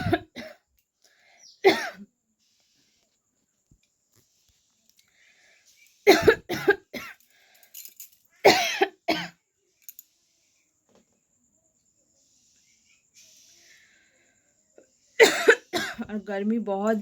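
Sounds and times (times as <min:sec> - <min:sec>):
woman coughing: 0:00.0 - 0:00.6, 0:01.6 - 0:02.0, 0:06.1 - 0:07.2, 0:08.4 - 0:09.4, 0:15.2 - 0:16.1.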